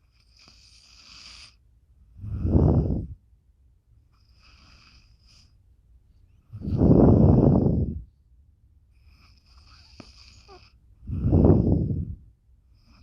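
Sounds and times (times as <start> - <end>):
dog snoring: 0.0 - 1.6, 4.1 - 5.5, 9.0 - 11.8.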